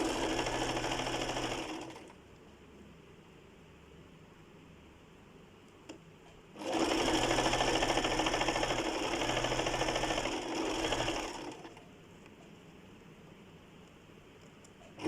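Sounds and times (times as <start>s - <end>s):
sewing machine stitching: 0.0s - 2.2s, 6.6s - 11.8s.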